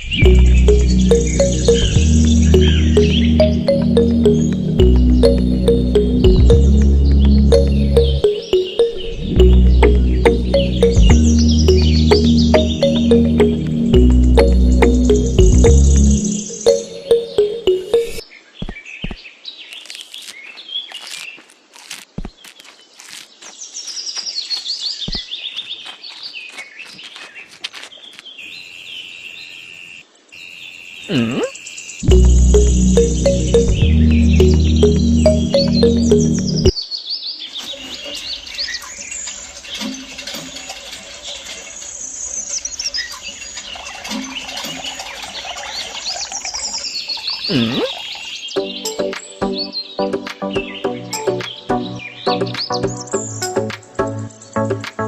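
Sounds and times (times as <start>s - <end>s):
music: 0.0s - 18.2s, 32.0s - 36.8s, 48.5s - 55.0s
small birds chirping: 0.0s - 55.0s
swooping tone: 0.1s - 18.2s.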